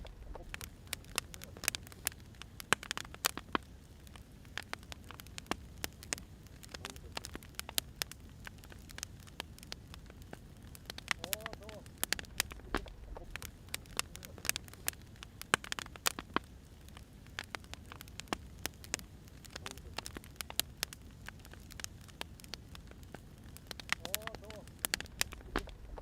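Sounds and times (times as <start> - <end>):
low rumble of flame: 0.0 - 26.0
wood fire crackling: 0.0 - 26.0.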